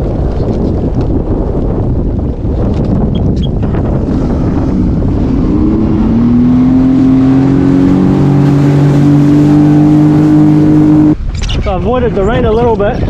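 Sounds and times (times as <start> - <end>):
rush of wind and water: 0.0 - 13.0
jet ski engine speeding up: 3.2 - 11.2.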